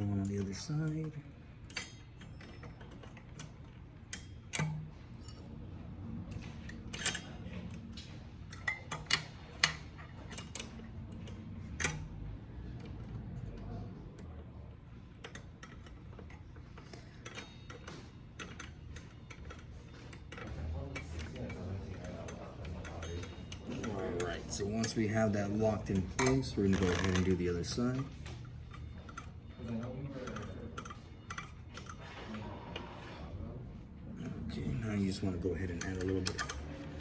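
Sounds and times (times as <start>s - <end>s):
small metal clicks and taps: 0.2s - 5.4s, 6.3s - 12.1s, 15.1s - 25.0s, 26.1s - 32.1s.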